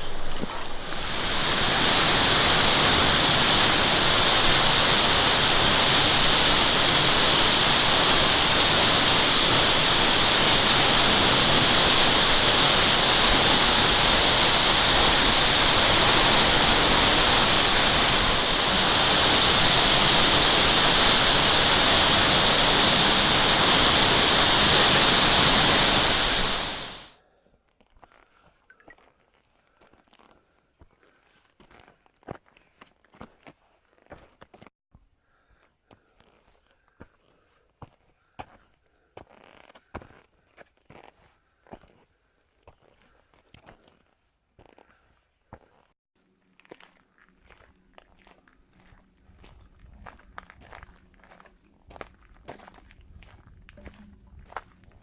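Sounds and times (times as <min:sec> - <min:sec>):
waterfall rushing: 0:00.0 - 0:27.1.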